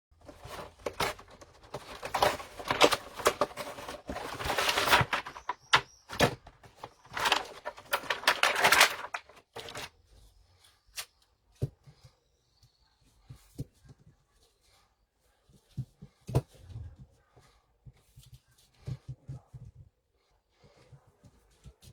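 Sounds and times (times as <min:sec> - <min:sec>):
packaging rustling and crinkling: 0:00.2 - 0:09.9.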